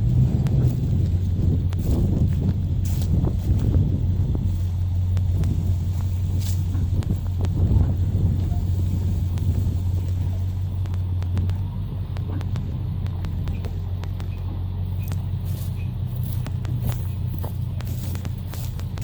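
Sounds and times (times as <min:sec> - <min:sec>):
diesel engine droning: 0:00.0 - 0:19.0
light clicks and rattles: 0:04.5 - 0:19.0.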